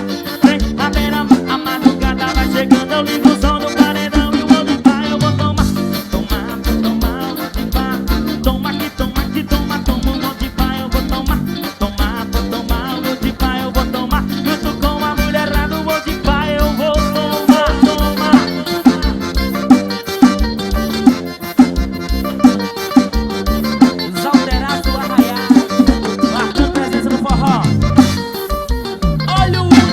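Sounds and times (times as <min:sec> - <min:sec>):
accordion melody: 0:00.0 - 0:29.9
fast pulsing bass beat: 0:00.0 - 0:29.9.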